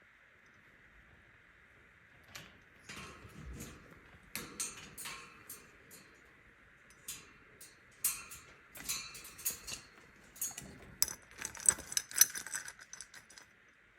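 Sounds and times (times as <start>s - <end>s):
wooden beads rattling and clinking: 8.3s - 13.6s.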